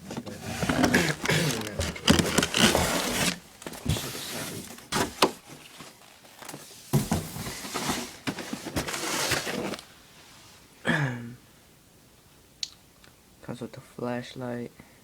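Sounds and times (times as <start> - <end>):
cardboard box rustling and scraping: 0.1 - 9.8.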